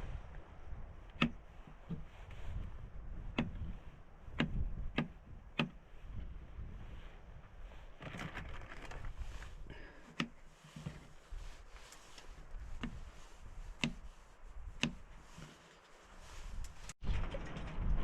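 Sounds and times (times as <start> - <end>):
wind rumble on microphone: 0.0 - 9.8, 10.5 - 18.0
brief rustle: 6.8 - 14.4, 15.0 - 18.0.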